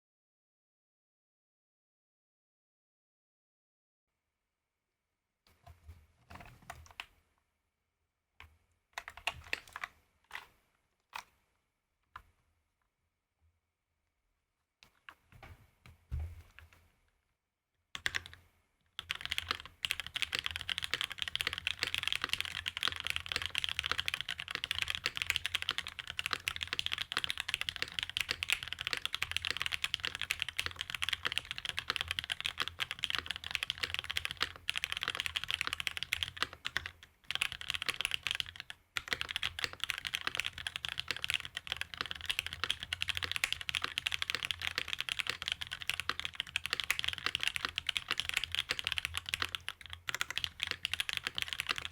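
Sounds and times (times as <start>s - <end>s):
mechanical keyboard typing: 9.0s - 10.5s, 18.0s - 18.4s, 19.0s - 51.9s.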